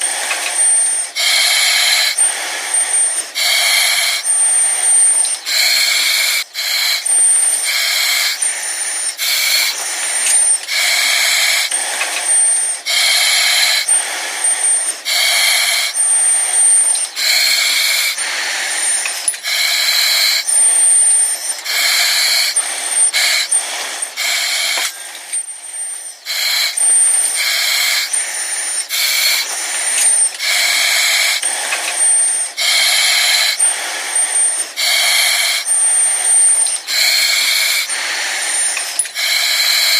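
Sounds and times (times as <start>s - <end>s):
hissing breaths through oxygen mask: 0.0s - 39.9s.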